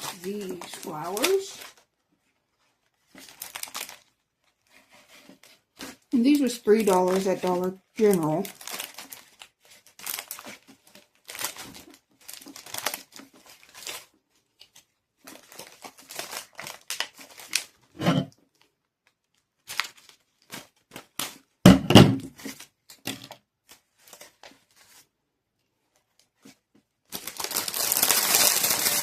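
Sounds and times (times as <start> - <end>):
plastic crinkling and rustling: 0.0 - 21.6, 22.2 - 25.2, 25.8 - 29.0
thumps: 21.7 - 22.3.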